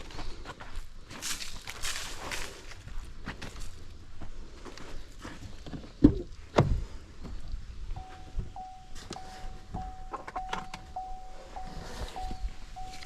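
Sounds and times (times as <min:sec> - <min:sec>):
pulsing high electronic tone: 0:08.0 - 0:13.0.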